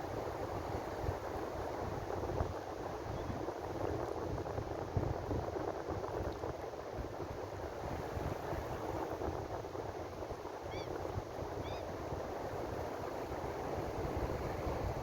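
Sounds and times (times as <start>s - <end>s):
ocean surf washing: 12.0s - 15.0s.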